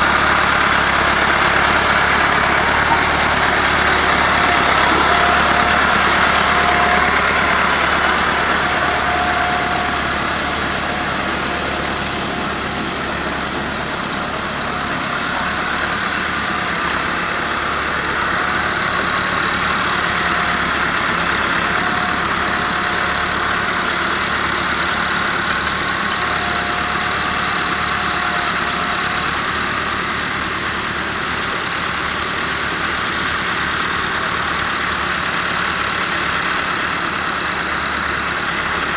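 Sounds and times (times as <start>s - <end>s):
tractor diesel engine running: 0.0s - 38.9s.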